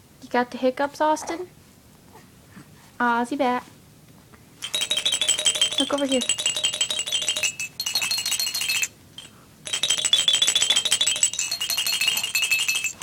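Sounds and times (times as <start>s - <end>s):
tinkling chime tune: 4.6s - 13.0s.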